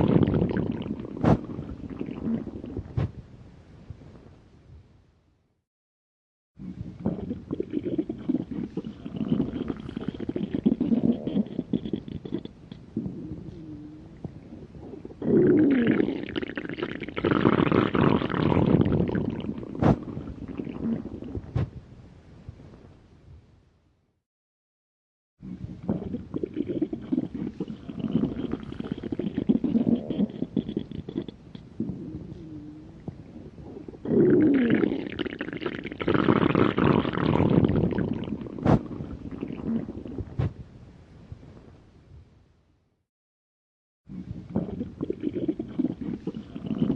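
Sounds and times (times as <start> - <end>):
stomach growling: 0.0 - 3.2, 6.6 - 21.8, 25.4 - 40.6, 44.1 - 46.9.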